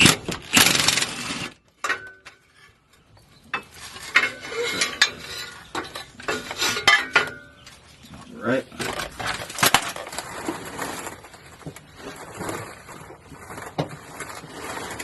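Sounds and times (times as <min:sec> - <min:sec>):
tools and metal hardware clinking: 0:01.8 - 0:07.7.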